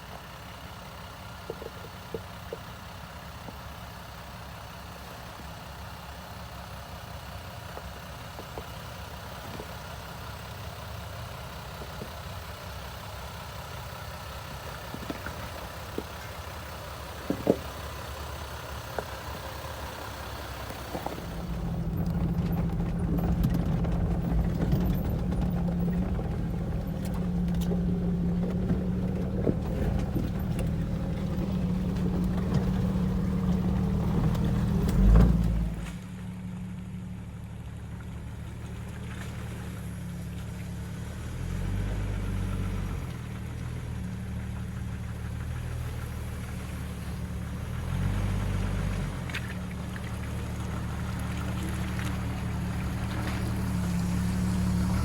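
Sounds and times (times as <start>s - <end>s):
vehicle engine droning: 0.0s - 55.0s.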